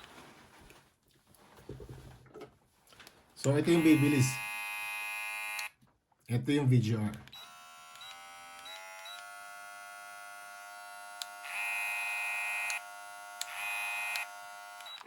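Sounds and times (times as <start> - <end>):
hair clipper running: 3.4 - 5.7, 7.3 - 15.0.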